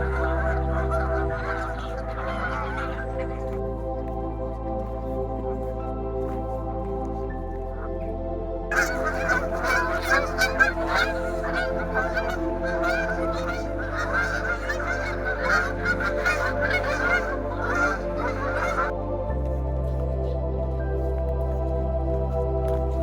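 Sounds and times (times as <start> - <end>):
geese honking: 0.0 - 3.6, 8.7 - 19.0
soft ambient music: 0.0 - 23.0.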